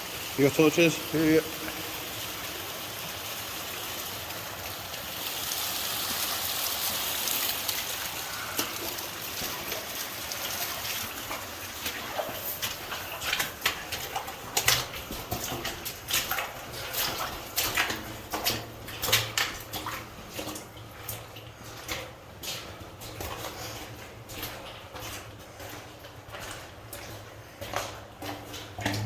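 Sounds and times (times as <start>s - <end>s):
footsteps splashing through water: 6.8s - 29.0s.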